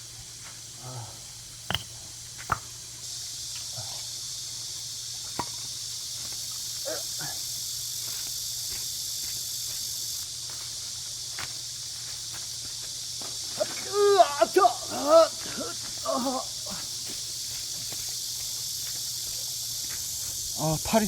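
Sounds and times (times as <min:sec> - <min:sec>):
high-pitched insect drone: 0:00.0 - 0:21.0
sharp knocks: 0:01.7 - 0:02.7.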